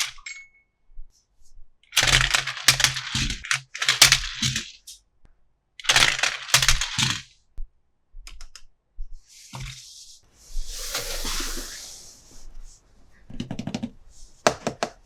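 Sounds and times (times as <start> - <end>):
plastic toy parts clattering: 1.9 - 5.0, 5.8 - 7.3
short hiss: 10.4 - 12.6.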